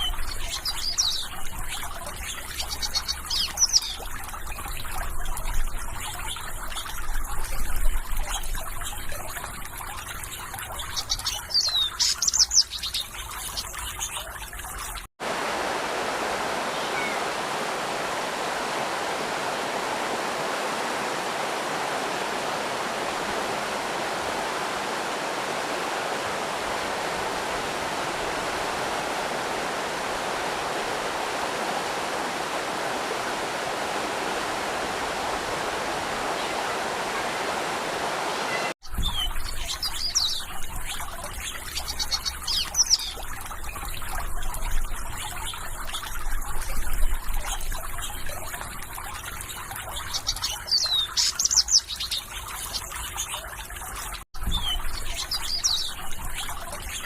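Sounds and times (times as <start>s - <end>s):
small birds chirping: 0.0s - 14.6s, 16.6s - 17.6s, 35.9s - 57.0s
flowing stream: 0.0s - 57.0s.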